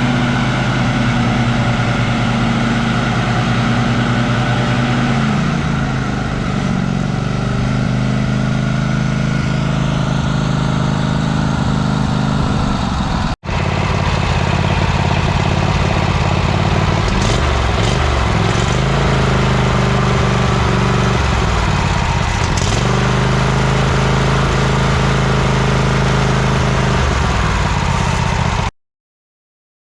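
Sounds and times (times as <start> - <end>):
lawn tractor engine running: 0.0 - 28.7.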